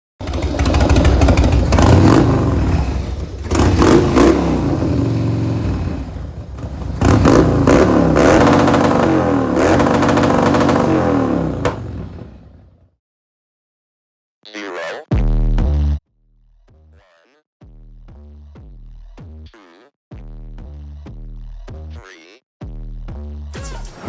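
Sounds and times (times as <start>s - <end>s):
motorcycle engine revving: 0.2s - 12.8s.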